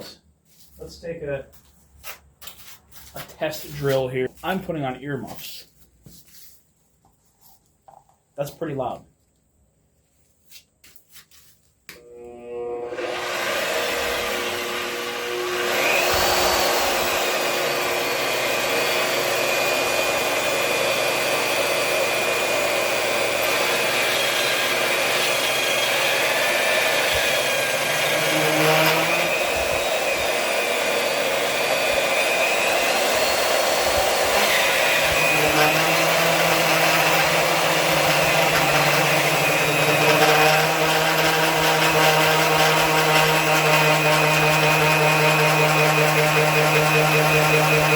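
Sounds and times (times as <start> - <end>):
magnetic drill boring through steel: 12.0 - 47.9.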